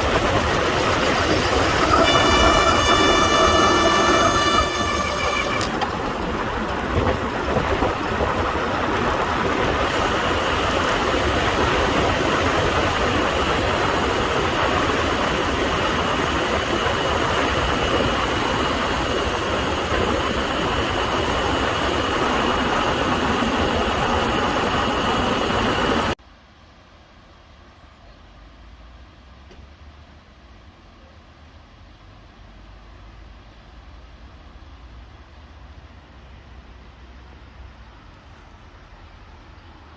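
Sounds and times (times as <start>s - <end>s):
wind and tyre noise: 0.0s - 26.2s
disc brakes squealing: 0.4s - 6.0s.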